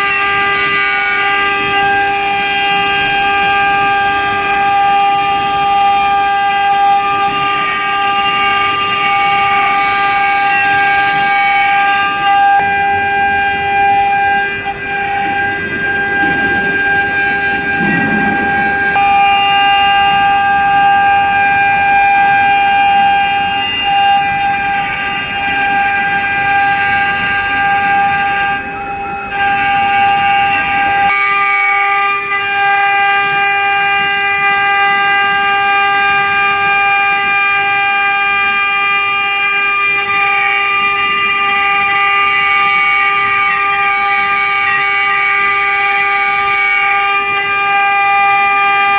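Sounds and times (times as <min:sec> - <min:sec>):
high-pitched spindle whine: 0:00.0 - 0:48.9.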